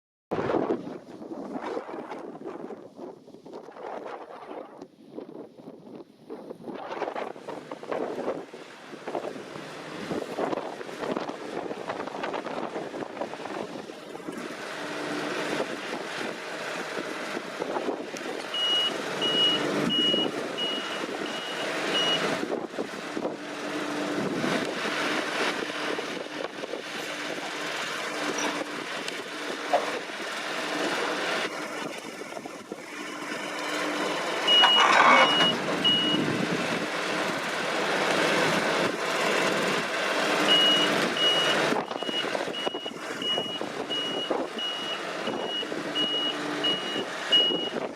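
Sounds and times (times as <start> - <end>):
combine harvester running: 7.0 - 47.9
reversing alarm beeping: 18.6 - 22.2, 33.4 - 36.2, 40.5 - 47.8.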